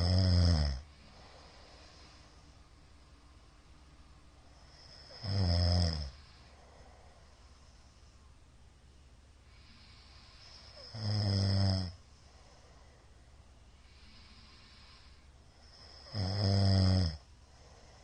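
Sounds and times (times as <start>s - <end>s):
man snoring loudly: 0.0s - 0.9s, 4.7s - 6.3s, 10.6s - 12.0s, 15.6s - 17.2s
soft breathing: 0.8s - 5.3s, 6.0s - 11.0s, 11.9s - 16.2s, 17.2s - 18.0s.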